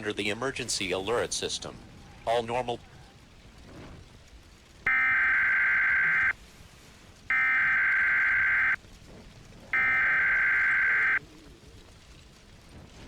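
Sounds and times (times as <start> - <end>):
harsh buzzy data tone bursts: 4.9 - 6.3, 7.3 - 8.8, 9.8 - 11.2.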